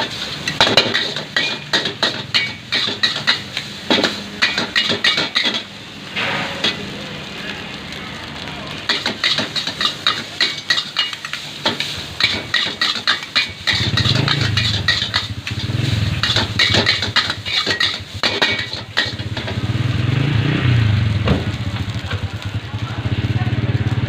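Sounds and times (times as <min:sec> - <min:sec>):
metal spatula clanging against wok: 0:00.1 - 0:06.8, 0:08.9 - 0:19.6
motorcycle engine running: 0:19.5 - 0:24.0.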